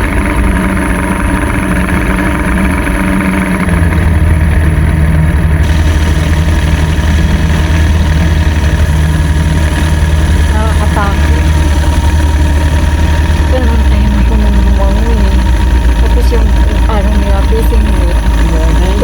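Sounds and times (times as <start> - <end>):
boat motor running: 0.0 - 19.0.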